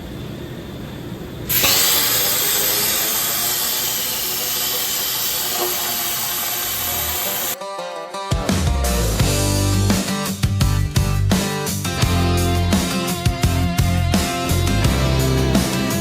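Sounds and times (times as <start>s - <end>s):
rushing air hiss: 1.5s - 7.6s.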